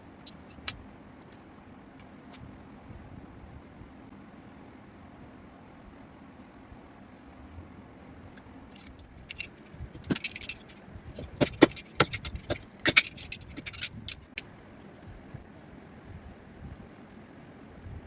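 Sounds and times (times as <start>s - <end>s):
door lock hardware clinking: 8.7s - 14.4s.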